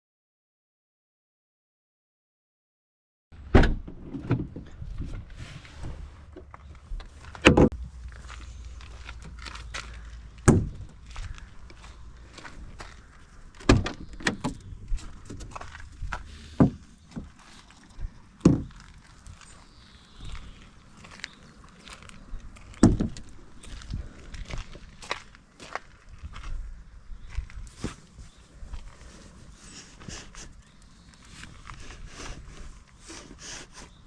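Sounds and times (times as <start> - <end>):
low steady hum: 4.6 - 24.6
sharp knocks and thuds: 10.4 - 11.4, 13.6 - 17.4, 18.0 - 18.9, 22.7 - 23.3.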